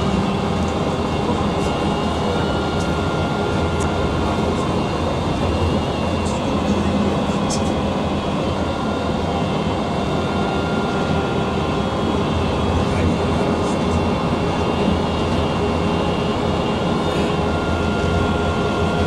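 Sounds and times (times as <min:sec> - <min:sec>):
motor whine: 0:00.0 - 0:19.0
train running noise: 0:00.0 - 0:19.0.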